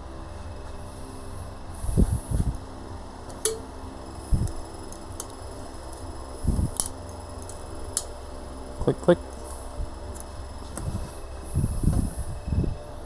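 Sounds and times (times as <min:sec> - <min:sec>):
fan hum: 0:00.0 - 0:13.0
sharp metallic clicks: 0:03.3 - 0:08.2.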